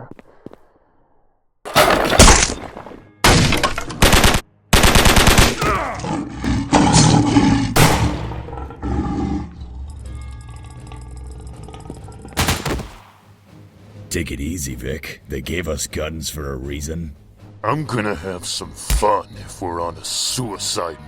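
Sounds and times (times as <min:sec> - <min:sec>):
machine-gun fire: 0:04.0 - 0:05.6.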